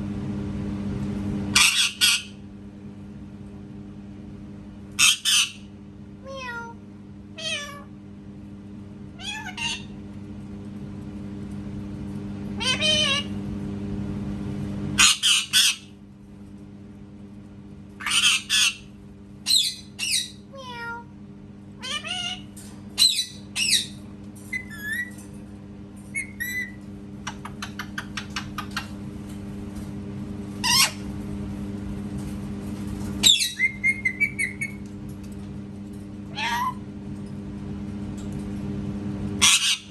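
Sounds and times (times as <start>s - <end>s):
parrot squawking: 1.6s - 2.4s, 5.0s - 5.7s, 7.4s - 7.9s, 9.2s - 10.0s, 12.6s - 13.4s, 15.0s - 15.9s, 18.0s - 21.0s, 21.8s - 25.2s, 26.1s - 29.0s, 30.6s - 31.1s, 33.2s - 34.8s, 36.3s - 36.8s, 39.4s - 39.9s
parrot mimicking cat meow: 6.2s - 6.8s, 7.4s - 7.9s, 9.2s - 9.9s, 12.6s - 13.3s, 20.4s - 21.1s, 21.8s - 22.5s, 36.3s - 36.8s.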